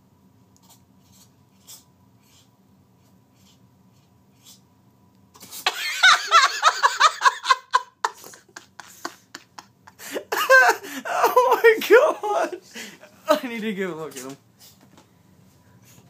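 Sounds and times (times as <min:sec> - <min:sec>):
person laughing loudly: 0:05.6 - 0:13.4.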